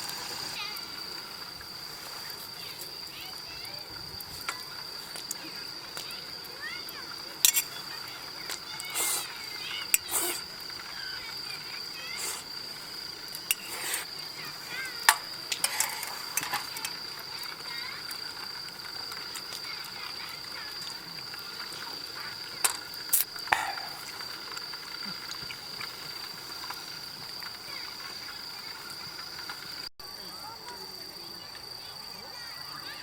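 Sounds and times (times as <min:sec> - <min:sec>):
crickets trilling: 0:00.0 - 0:33.0
sharp clicks and clinks: 0:07.4 - 0:07.8, 0:22.6 - 0:24.4.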